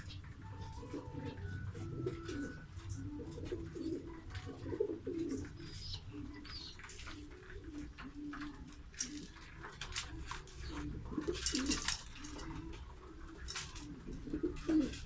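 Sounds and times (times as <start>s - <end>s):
pigeons cooing: 0.0s - 15.0s
light clicks and scratches: 2.1s - 15.0s.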